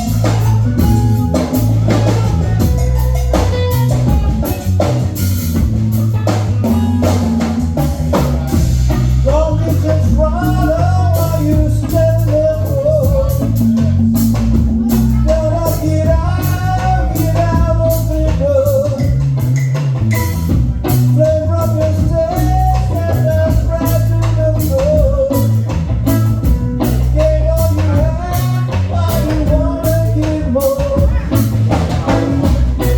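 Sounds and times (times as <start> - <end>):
wavering lead melody: 0.0 - 24.7
bass line: 0.0 - 32.9
drum kit beat: 0.0 - 32.9.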